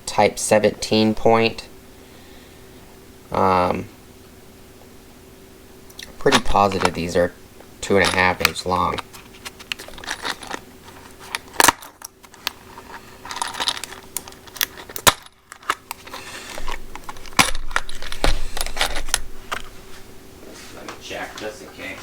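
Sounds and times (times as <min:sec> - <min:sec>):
screws jingling in box: 0:09.7 - 0:10.6.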